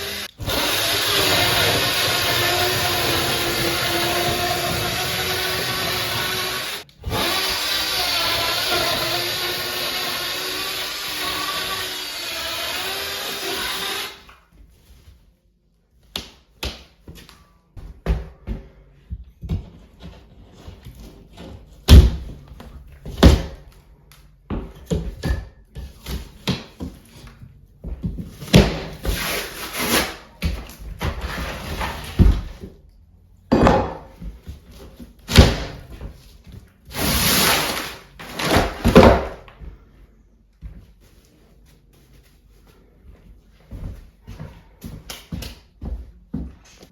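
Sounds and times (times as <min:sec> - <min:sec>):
knocks and thuds on wood: 0:33.5 - 0:34.4.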